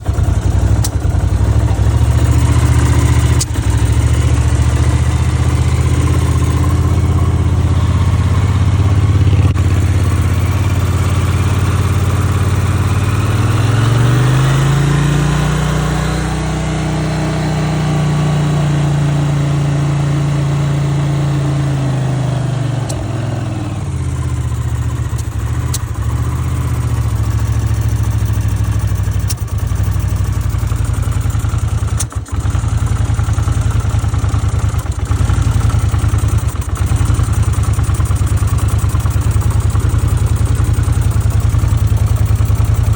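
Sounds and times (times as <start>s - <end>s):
engine pops: 0.0s - 4.7s
motorcycle engine idling and revving: 0.0s - 42.9s.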